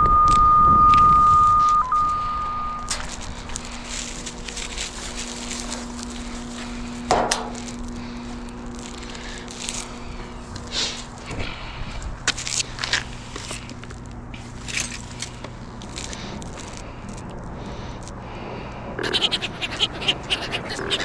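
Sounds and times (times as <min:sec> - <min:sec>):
receiver high tone: 0:00.0 - 0:03.0
handling crackles and knocks: 0:03.0 - 0:09.8.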